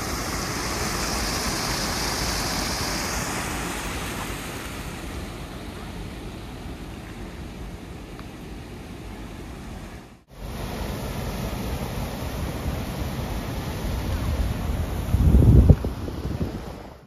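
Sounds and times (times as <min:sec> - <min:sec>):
waterfall rushing: 0:00.0 - 0:08.8, 0:10.4 - 0:17.0
wind buffeting microphone: 0:14.0 - 0:17.0.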